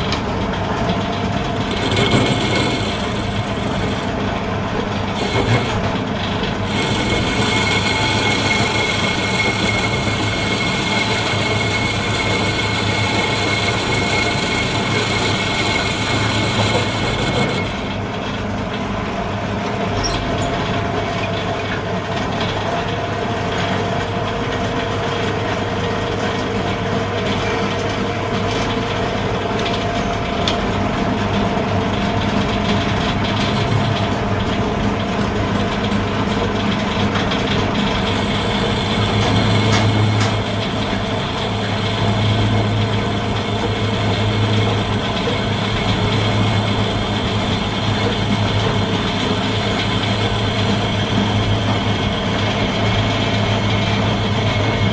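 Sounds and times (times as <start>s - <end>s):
machine humming and whining: 0.0s - 18.8s, 29.6s - 54.9s.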